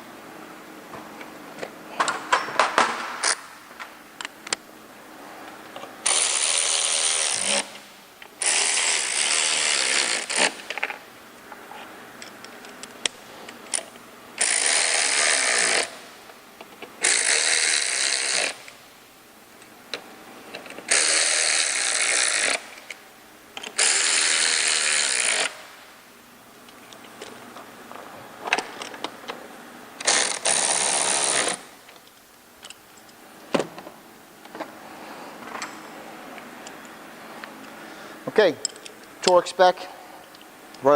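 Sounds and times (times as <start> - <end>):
cordless power tool driving bolts: 2.0 - 4.6, 6.0 - 11.0, 12.2 - 18.8, 20.5 - 23.0, 23.6 - 25.8, 30.0 - 32.8.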